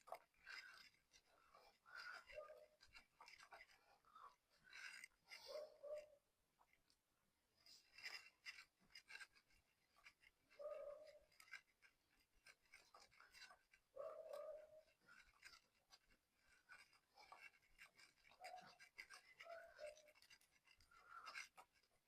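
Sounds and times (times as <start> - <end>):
scrubbing motorcycle chain: 7.6 - 22.0.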